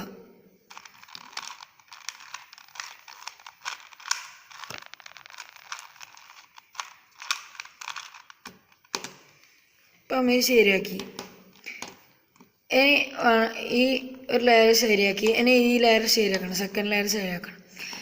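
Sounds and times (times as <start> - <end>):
puzzle cube clicking: 0.7 - 9.3.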